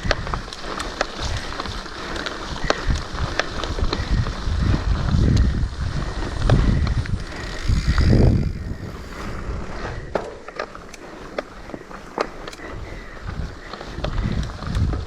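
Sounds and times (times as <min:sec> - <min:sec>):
bike clicks and rattles: 0:00.0 - 0:15.0
wind buffeting microphone: 0:00.0 - 0:15.0.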